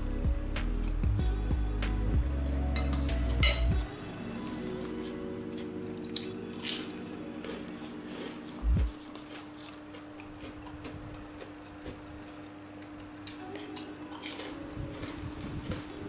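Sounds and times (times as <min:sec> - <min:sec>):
steady low hum: 0:00.0 - 0:16.0
soft chewing: 0:04.3 - 0:16.0.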